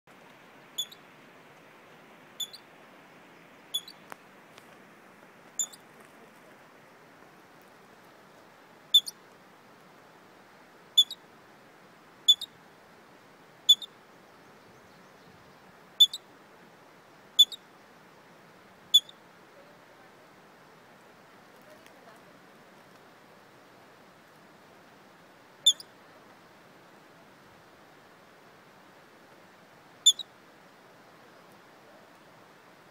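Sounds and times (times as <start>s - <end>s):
faint steady hiss: 0.1s - 32.9s
squirrel chirping: 0.7s - 1.0s, 2.4s - 2.6s, 3.7s - 4.0s, 5.6s - 5.8s, 8.9s - 9.2s, 11.0s - 11.2s, 12.3s - 12.5s, 13.7s - 13.9s, 16.0s - 16.2s, 17.4s - 17.6s, 18.9s - 19.2s, 25.6s - 25.9s, 30.0s - 30.3s.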